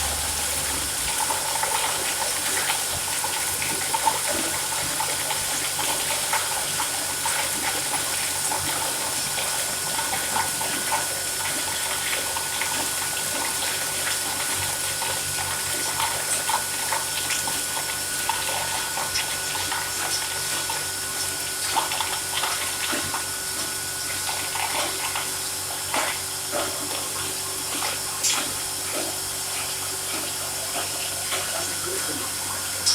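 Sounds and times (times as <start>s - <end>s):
machine hum: 0.0s - 2.6s
flowing water rushing: 0.0s - 4.9s.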